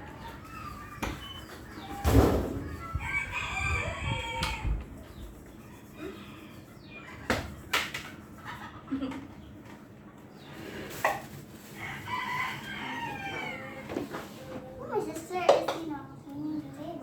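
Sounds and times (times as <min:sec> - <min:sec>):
rooster crowing: 0:01.9 - 0:04.8, 0:11.7 - 0:14.2.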